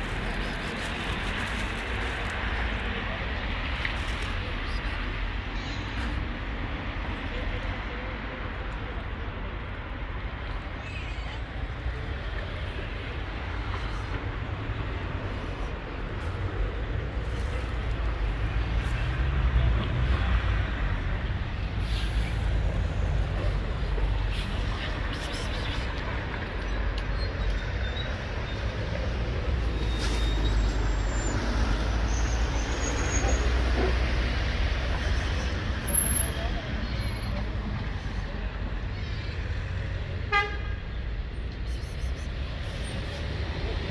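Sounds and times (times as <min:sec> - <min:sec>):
low street rumble: 0:00.0 - 0:43.9.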